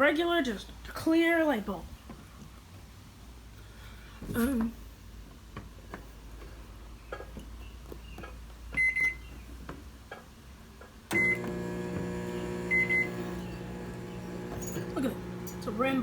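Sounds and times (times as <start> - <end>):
microwave keypad beeps: 8.8 - 9.2, 11.1 - 11.5, 12.5 - 15.0
microwave oven humming: 11.1 - 16.0.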